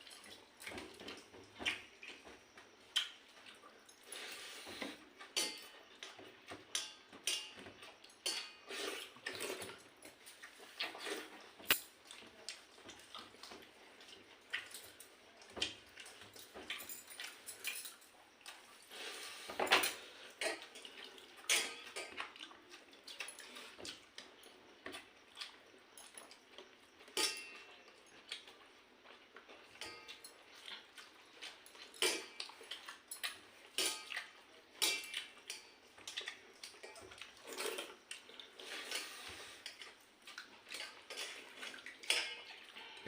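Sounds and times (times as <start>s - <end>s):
wet eating noises: 0.0s - 6.8s, 7.8s - 43.0s
clinks on a plate: 5.4s - 5.8s, 6.5s - 8.7s, 21.4s - 22.2s, 27.0s - 27.8s, 29.7s - 30.4s, 33.1s - 35.8s, 42.0s - 43.0s.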